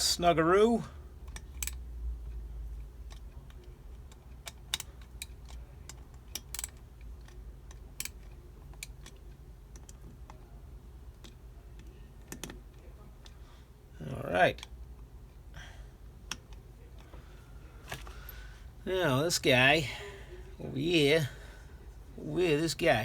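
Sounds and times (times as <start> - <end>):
low steady hum: 0.0 - 23.0
screwdriver clicks on metal parts: 1.2 - 1.8, 3.0 - 10.4, 11.1 - 13.4.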